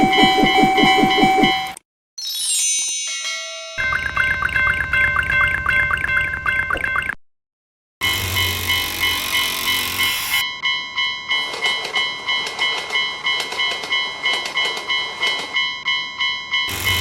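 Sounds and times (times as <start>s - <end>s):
railroad crossing bell ringing: 2.8s - 6.8s, 8.0s - 17.0s
train rumble and clattering wheels: 8.4s - 17.0s.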